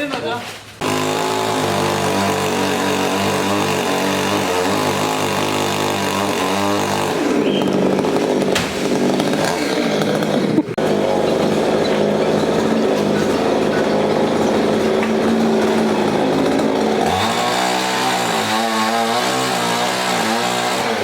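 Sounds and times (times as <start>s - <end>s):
chainsaw engine revving: 0.8s - 21.0s.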